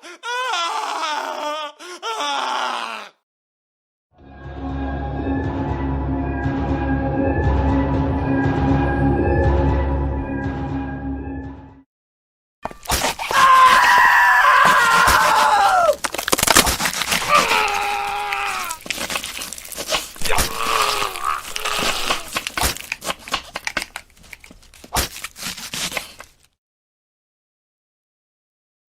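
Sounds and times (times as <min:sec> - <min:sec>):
man screaming: 0:00.0 - 0:03.2, 0:13.3 - 0:16.0, 0:17.3 - 0:18.8, 0:20.2 - 0:22.3
cracking and crunching noises: 0:12.7 - 0:26.6.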